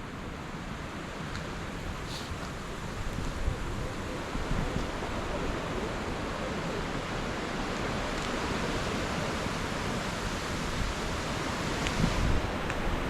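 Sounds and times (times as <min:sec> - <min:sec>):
steady rushing outdoor noise: 0:00.0 - 0:13.0.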